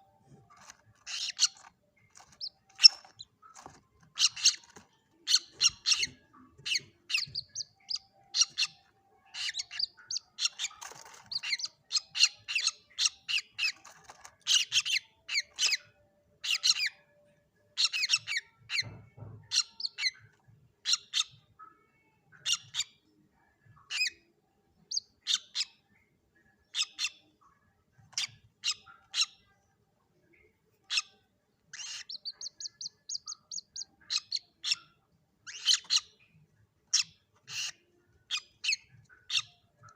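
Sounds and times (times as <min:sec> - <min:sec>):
moorhen chicks calling: 0:00.5 - 0:17.0, 0:30.9 - 0:36.3, 0:36.9 - 0:39.9.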